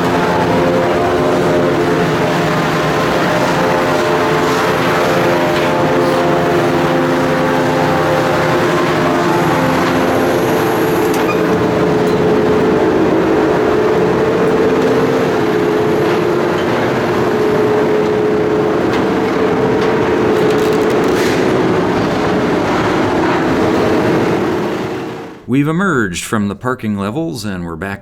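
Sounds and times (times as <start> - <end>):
loud mechanical drone: 0.0 - 25.4.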